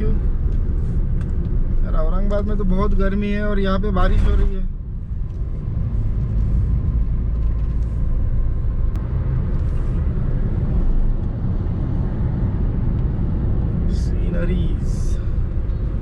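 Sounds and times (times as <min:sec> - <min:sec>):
car engine and road noise: 0:00.0 - 0:16.0.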